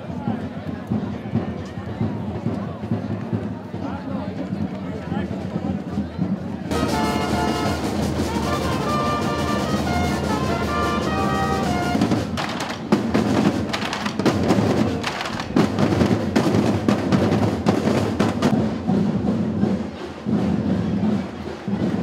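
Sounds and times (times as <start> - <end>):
dense heavy drumming: 6.7 - 22.0.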